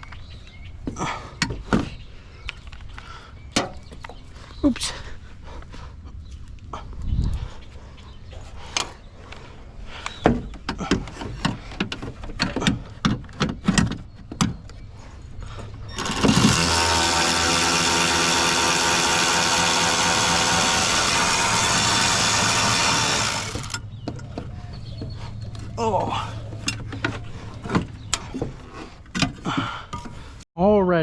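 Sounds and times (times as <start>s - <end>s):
loud steady motor running: 16.0s - 29.1s.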